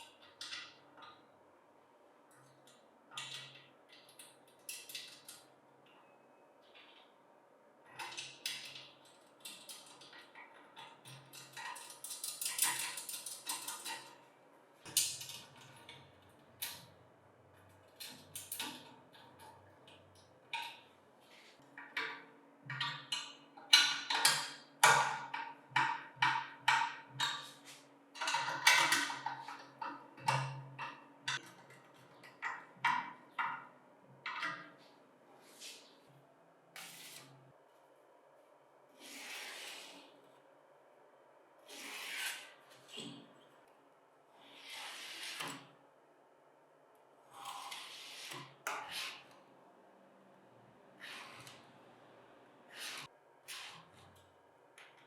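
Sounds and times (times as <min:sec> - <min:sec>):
metal parts and tools clicking: 0:07.9 - 0:14.2.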